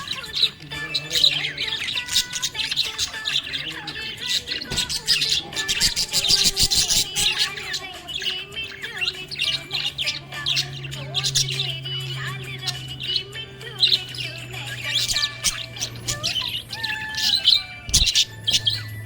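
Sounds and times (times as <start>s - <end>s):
budgerigar chirping and warbling: 0.0s - 19.0s.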